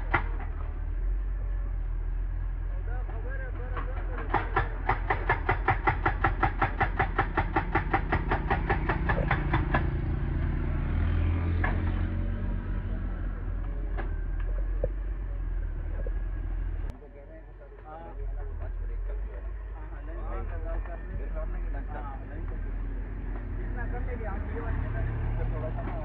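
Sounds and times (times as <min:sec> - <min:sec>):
diesel engine rumbling: 0:00.0 - 0:26.0
rock breaker hammering stone: 0:04.2 - 0:10.0.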